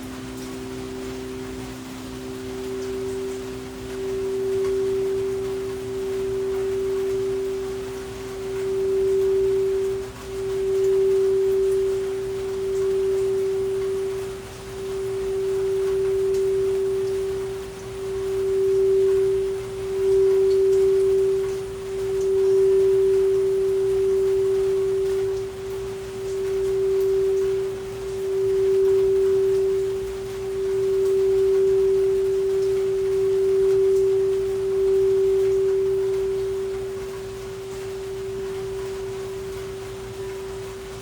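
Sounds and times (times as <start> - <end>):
faint rain: 0.0 - 41.0
singing bowl tone: 0.0 - 41.0.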